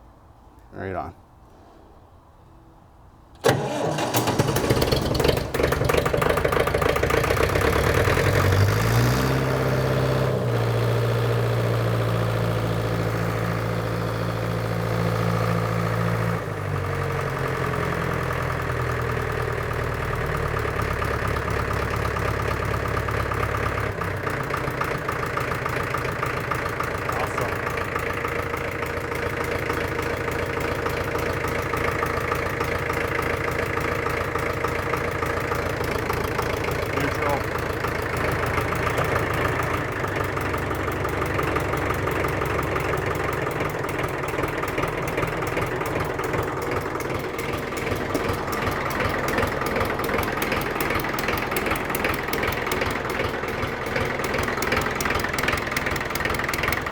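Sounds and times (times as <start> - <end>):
diesel engine running: 3.3 - 56.9.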